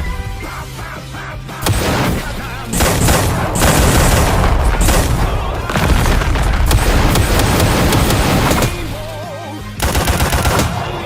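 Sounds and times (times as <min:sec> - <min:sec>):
cartoon fight hits and booms: 0:01.6 - 0:09.2.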